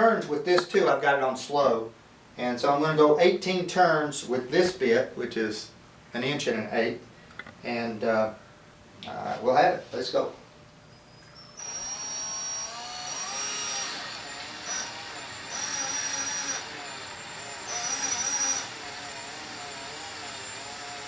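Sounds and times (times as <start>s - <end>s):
cordless drill motor whine: 11.2s - 21.0s
drill bit cutting wood: 11.6s - 21.0s.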